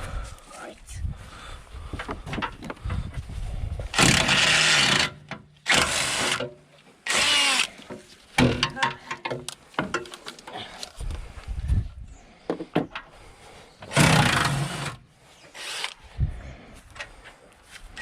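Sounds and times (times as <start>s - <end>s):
impact wrench bursts: 3.9s - 6.5s, 7.1s - 7.7s, 13.9s - 15.0s
tools and bolts clicking and knocking: 8.4s - 10.5s.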